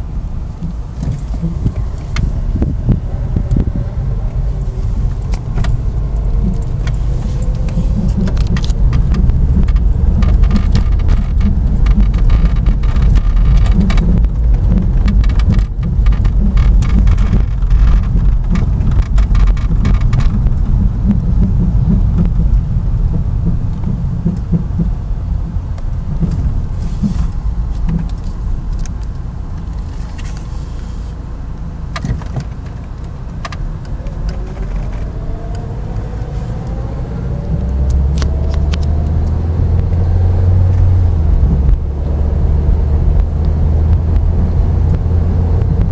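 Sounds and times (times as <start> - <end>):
car road rumble from inside: 0.0 - 45.9
sharp clicks and rattles: 0.6 - 30.9, 31.6 - 45.9
rubbing noise: 4.5 - 25.0, 26.0 - 28.7.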